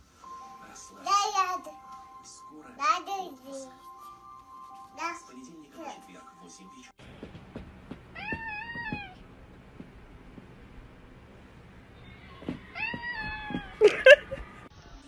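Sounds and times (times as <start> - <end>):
faint knocks: 7.0 - 10.8, 12.2 - 14.6
cat meowing: 8.1 - 9.2, 12.1 - 13.8.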